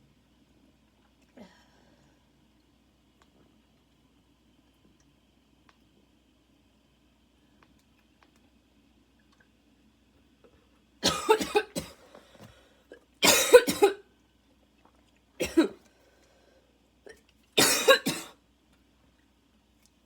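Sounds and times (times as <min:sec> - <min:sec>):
woman coughing: 0:11.0 - 0:12.0, 0:13.2 - 0:14.0, 0:15.4 - 0:15.8, 0:17.6 - 0:18.4.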